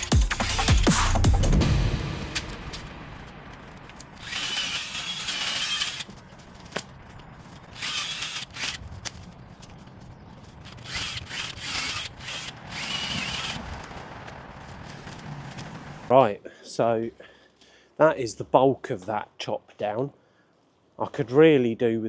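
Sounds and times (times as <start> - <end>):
chainsaw cutting hedge branches: 4.2 - 6.1, 10.6 - 14.2
cordless chainsaw revving: 4.2 - 6.1, 10.8 - 13.7.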